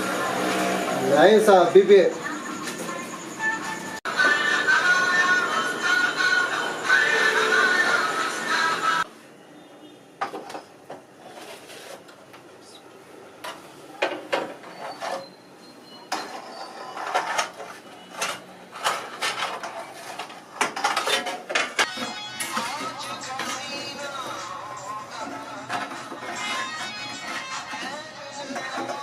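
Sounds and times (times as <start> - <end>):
background music: 2.6 - 9.1, 21.9 - 29.0
metal kitchenware clattering: 16.0 - 24.0, 25.2 - 29.0.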